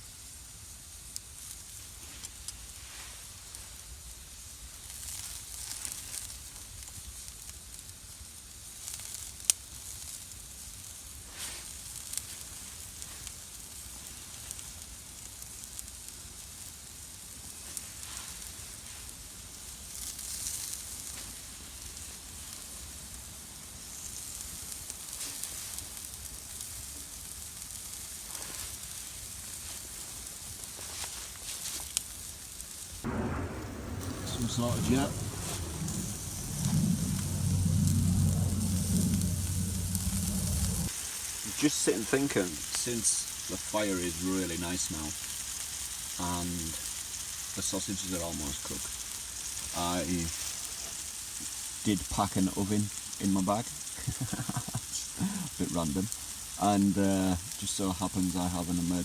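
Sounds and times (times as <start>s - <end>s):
sausages sizzling over campfire: 8.9s - 59.0s
fire crackling: 33.0s - 59.0s.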